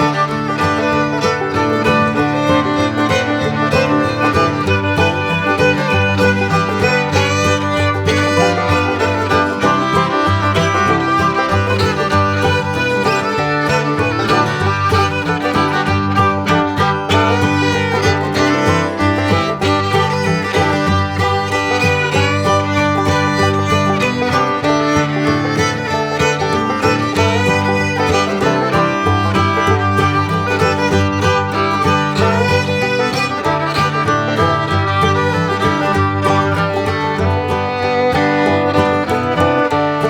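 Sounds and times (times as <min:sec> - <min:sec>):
upbeat string-band tune with fiddle: 0:00.0 - 0:40.0.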